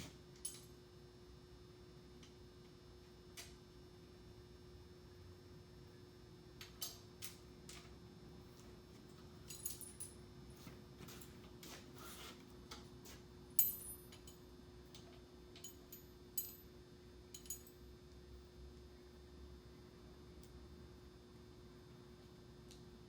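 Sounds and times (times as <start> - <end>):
faint steady hum: 0.0 - 23.0
metallic clinks of hand tools: 13.6 - 14.4, 15.6 - 16.7, 17.4 - 17.8.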